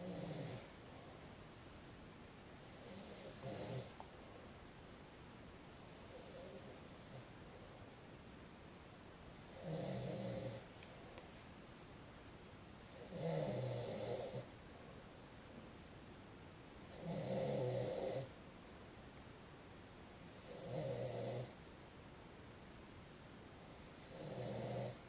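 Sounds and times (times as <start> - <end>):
man snoring: 0.0 - 0.7, 2.6 - 4.0, 5.9 - 7.3, 9.4 - 10.6, 12.8 - 14.5, 16.8 - 18.3, 20.3 - 21.5, 23.8 - 25.0.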